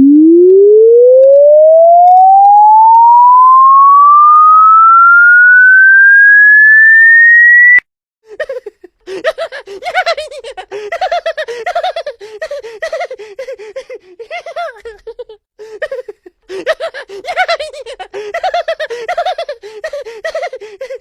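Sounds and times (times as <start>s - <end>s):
electronic tone rising in pitch: 0.0s - 7.8s
high vocal squeals: 16.4s - 21.0s.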